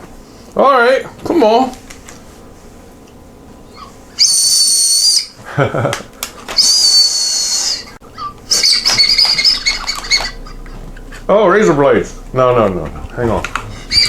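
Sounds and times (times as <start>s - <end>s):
candy whistle shrill toots: 4.1s - 5.4s, 6.5s - 10.4s.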